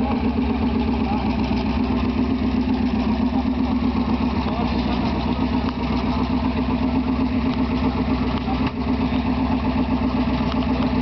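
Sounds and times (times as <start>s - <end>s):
engine idling with rhythmic rumble: 0.0s - 11.0s.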